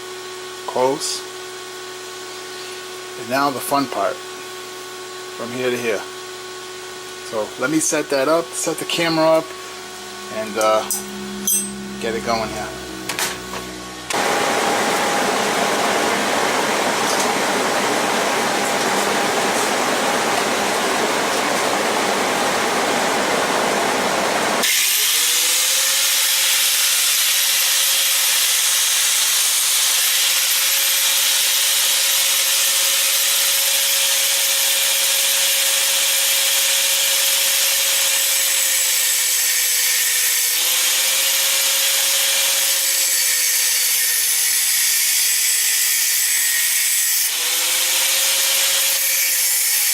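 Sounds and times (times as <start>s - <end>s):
angle grinder cutting steel: 23.4s - 49.9s.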